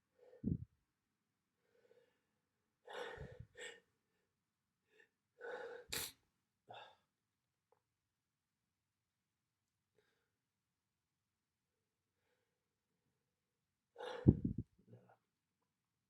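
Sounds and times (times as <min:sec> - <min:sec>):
person sneezing: 0:05.9 - 0:06.1.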